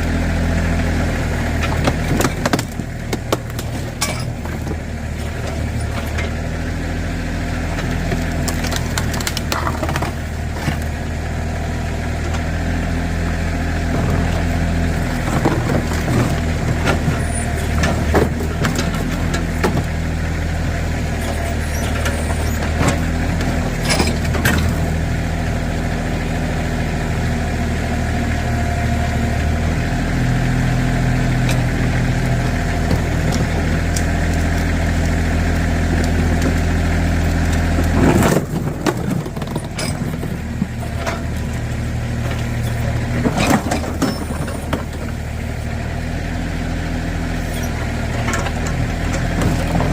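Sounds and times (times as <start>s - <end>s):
backhoe engine running: 0.0s - 49.9s
knocks and crunches: 7.8s - 10.9s.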